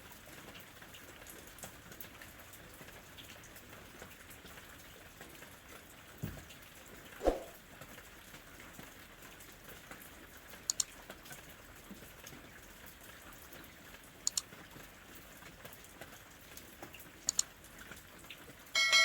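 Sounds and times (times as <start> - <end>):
rain patter: 0.0 - 18.8
sharp drip taps: 10.7 - 10.9, 17.3 - 17.5.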